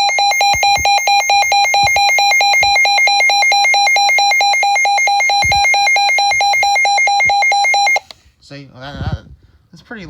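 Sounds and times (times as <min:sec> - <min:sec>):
pulsing high-pitched alarm beep: 0:00.0 - 0:08.0.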